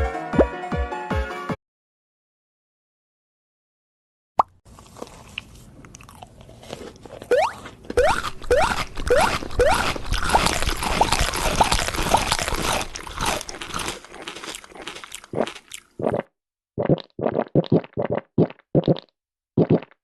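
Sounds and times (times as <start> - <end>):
crunchy food being chewed: 4.7 - 16.3
chewing squeak: 5.0 - 15.9.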